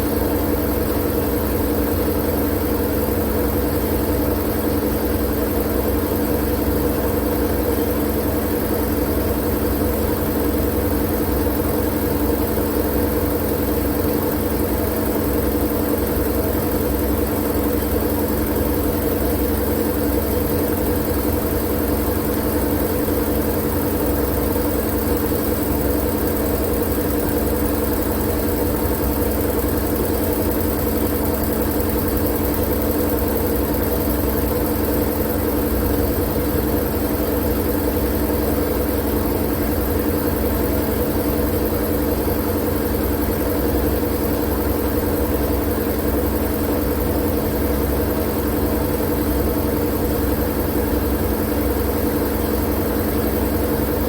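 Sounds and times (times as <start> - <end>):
steady drone with low hum: 0.0 - 54.0.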